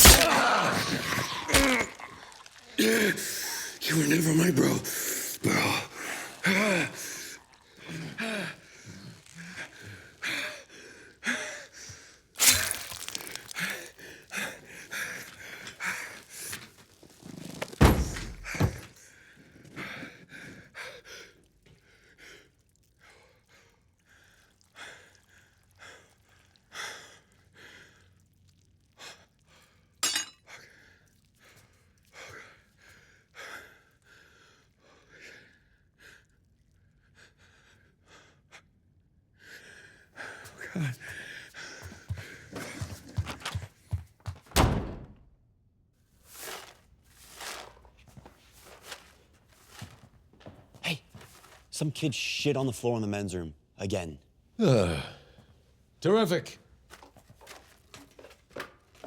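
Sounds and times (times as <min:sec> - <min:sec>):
glass shattering: 0:00.0 - 0:03.6, 0:12.4 - 0:13.9, 0:30.0 - 0:30.4
hard breaths: 0:00.0 - 0:17.1, 0:39.4 - 0:44.4.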